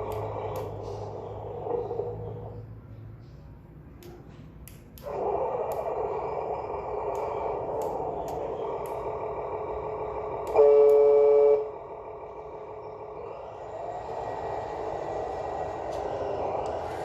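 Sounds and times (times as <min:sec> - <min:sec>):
simulated truck engine sound: 0:00.0 - 0:17.0
electronic horn blast: 0:10.4 - 0:11.9.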